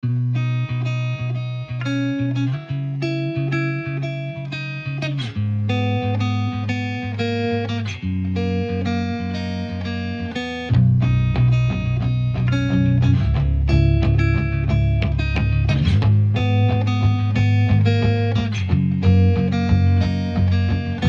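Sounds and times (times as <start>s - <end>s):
plucked guitar pattern: 0.0s - 21.0s
steady bass line: 5.4s - 21.0s.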